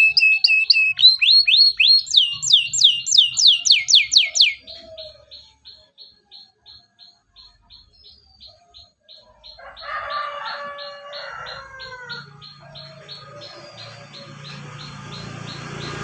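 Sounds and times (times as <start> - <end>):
drawn-out bird call: 0.0 - 5.5, 9.4 - 16.0
canary chirping: 0.0 - 16.0.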